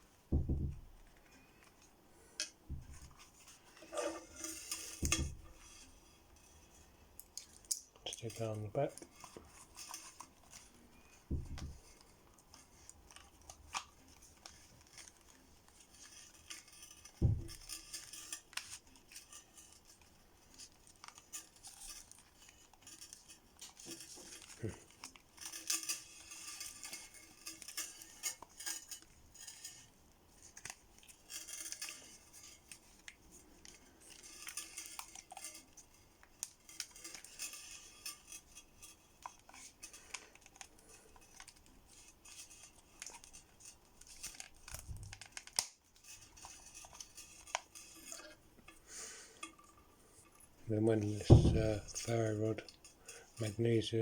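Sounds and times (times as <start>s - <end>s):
low thump: 51.3s - 51.9s.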